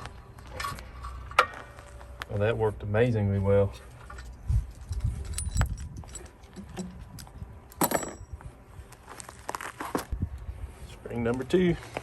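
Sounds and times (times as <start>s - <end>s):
metal tools clanking: 3.8s - 8.3s.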